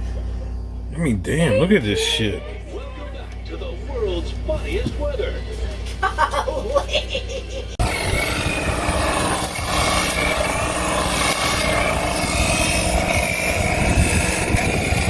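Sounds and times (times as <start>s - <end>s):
engine running with low throb: 7.8s - 15.0s
faint steady whine: 7.8s - 15.0s.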